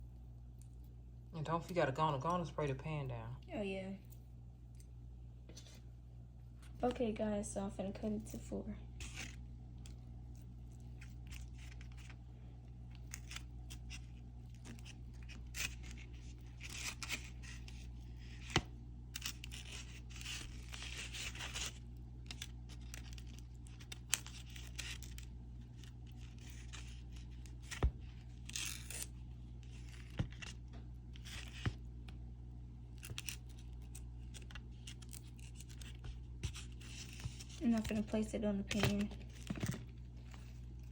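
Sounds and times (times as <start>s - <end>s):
steady low hum: 0.0s - 40.9s
dough scraping and tearing: 8.2s - 32.2s, 32.9s - 40.9s.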